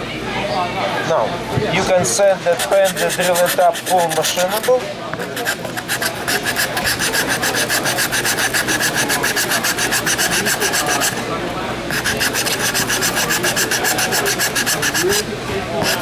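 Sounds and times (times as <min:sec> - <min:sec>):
hand sanding rasping strokes: 0:02.5 - 0:11.2, 0:11.9 - 0:16.0.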